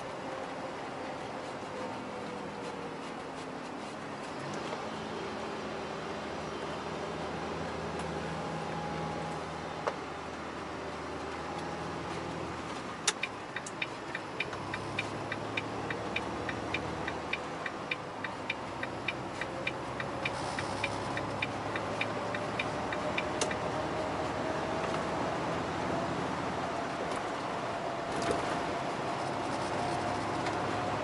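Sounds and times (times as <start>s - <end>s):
engine and road hum: 0.0s - 31.0s
turn signal clicking: 13.0s - 23.7s.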